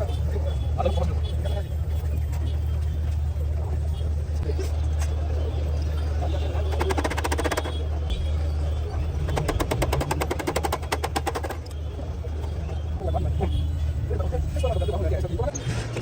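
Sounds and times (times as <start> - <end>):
rapid clattering taps: 6.7 - 7.8, 9.2 - 11.8.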